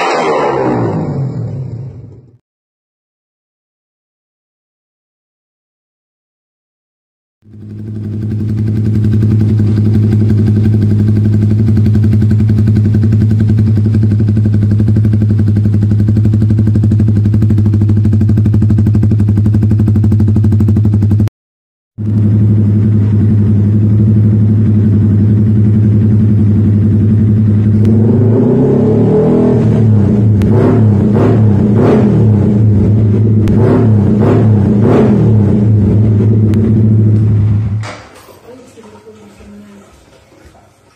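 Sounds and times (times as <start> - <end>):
motorcycle engine idling and revving: 0.0 - 2.4, 7.4 - 21.3, 22.0 - 38.1.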